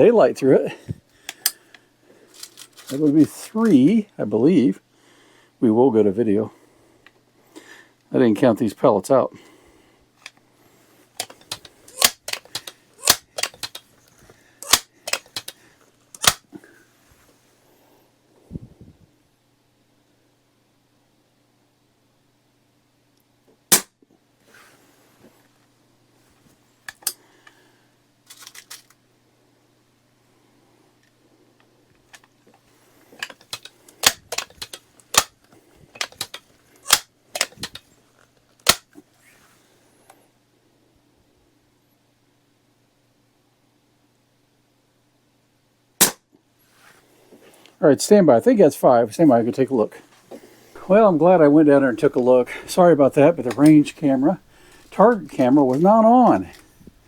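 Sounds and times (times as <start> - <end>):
air rifle clacks and snaps: 1.2 - 3.8, 11.2 - 14.0, 14.6 - 15.6, 16.2 - 16.5, 26.9 - 27.2, 33.1 - 37.9, 38.6 - 39.0, 51.8 - 57.0
air rifle pump clacks: 11.2 - 13.9, 14.6 - 15.6, 33.2 - 35.3, 36.0 - 37.8.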